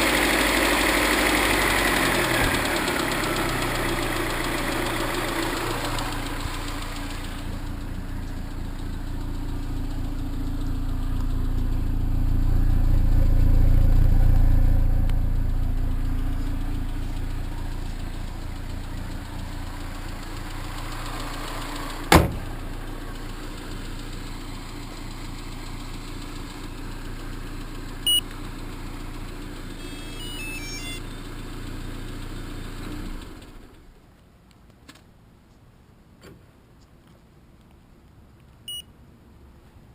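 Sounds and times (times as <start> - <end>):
car engine with knocking rattle: 0.0 - 30.2.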